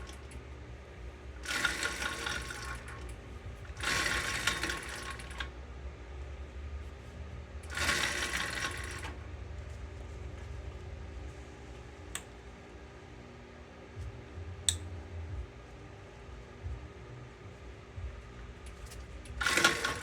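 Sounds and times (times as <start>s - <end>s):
engine cranking without starting: 1.4s - 5.5s, 7.7s - 9.2s, 19.4s - 20.0s.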